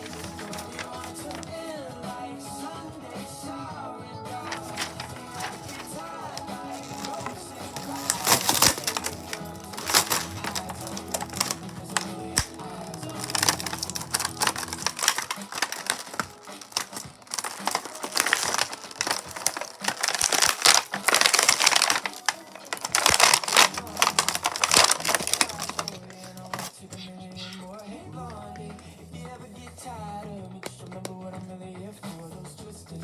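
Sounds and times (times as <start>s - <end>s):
plastic packaging crinkling: 0.0s - 1.8s, 4.4s - 26.8s.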